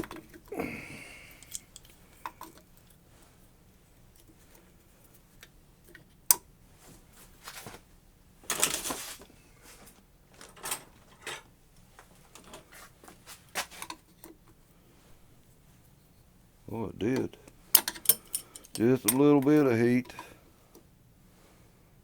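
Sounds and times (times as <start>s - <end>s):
metal tools clattering: 0.0s - 2.9s, 10.4s - 11.5s, 17.7s - 20.4s.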